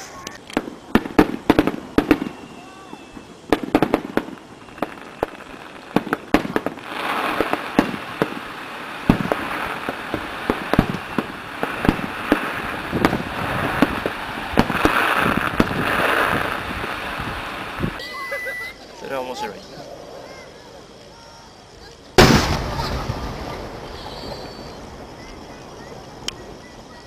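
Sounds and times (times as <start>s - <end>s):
many small crackling bursts: 0.0s - 18.0s, 18.7s - 27.0s
fireworks shells bursting: 0.0s - 18.1s, 22.1s - 25.3s.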